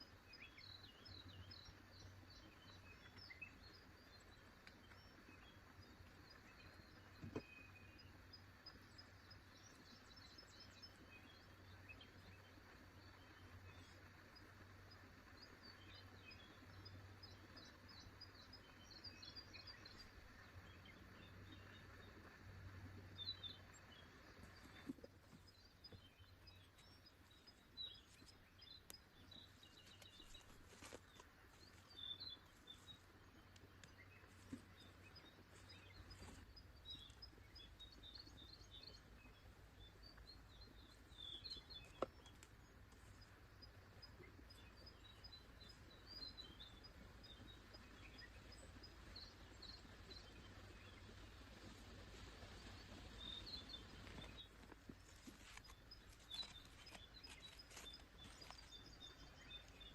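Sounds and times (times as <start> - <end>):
small birds chirping: 0.0 - 59.9
soft steady hiss: 0.0 - 59.9
faint clicks: 24.3 - 37.3.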